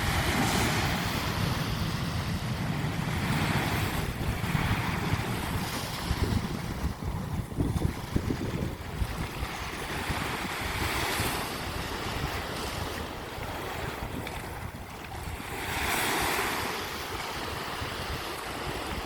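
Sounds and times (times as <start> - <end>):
sea waves breaking on a beach: 0.0 - 19.0
wind buffeting the microphone: 0.0 - 19.0.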